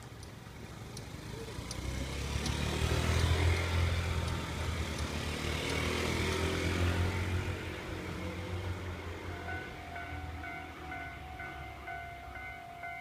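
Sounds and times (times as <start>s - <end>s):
vehicle engine rumble: 0.0s - 13.0s
level crossing alarm dinging: 9.1s - 13.0s.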